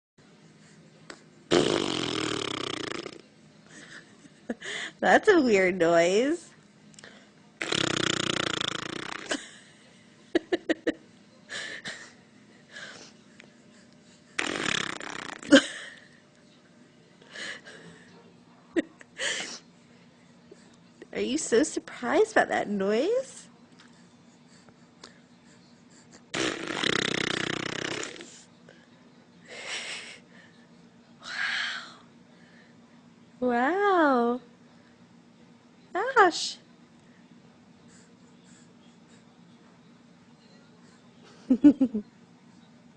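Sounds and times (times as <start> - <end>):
rasping fake fart noise: 1.5 - 3.2, 7.6 - 9.4, 14.4 - 15.6, 26.3 - 28.4.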